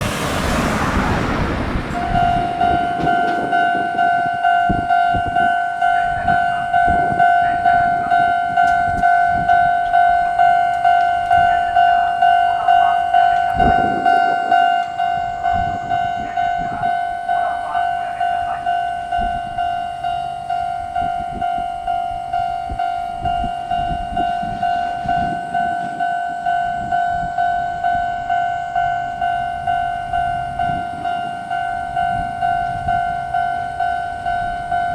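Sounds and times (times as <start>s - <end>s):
train wheels clacking over rail joints: 1.6s - 7.2s
level crossing warning bell: 1.7s - 34.9s.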